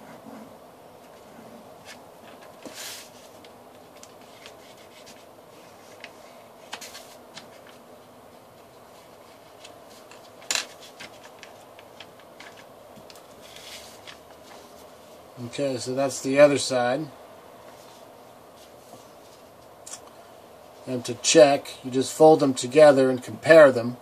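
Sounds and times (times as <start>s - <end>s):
paper rustling and creasing: 1.0s - 7.8s, 8.9s - 15.2s
paper crinkle: 1.8s - 7.8s, 8.9s - 14.8s.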